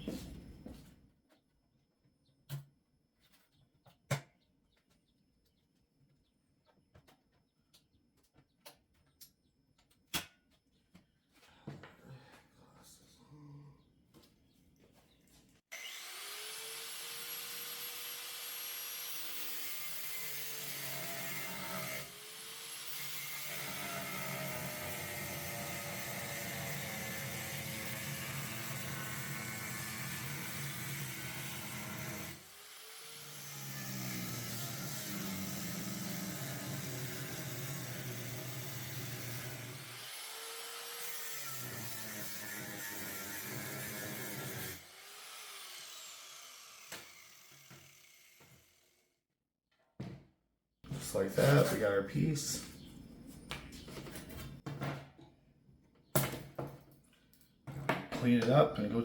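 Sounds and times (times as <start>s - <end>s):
electric saw cutting sheet metal: 15.7s - 49.0s.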